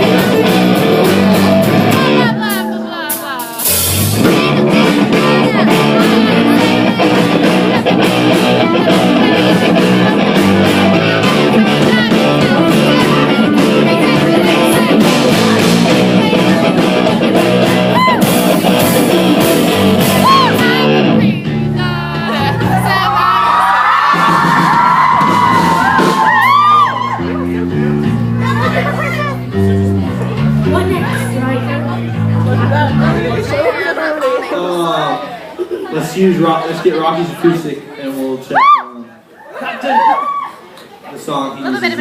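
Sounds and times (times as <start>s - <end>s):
person singing lead vocal: 0.0s - 24.3s
rock band playing live: 0.0s - 34.5s.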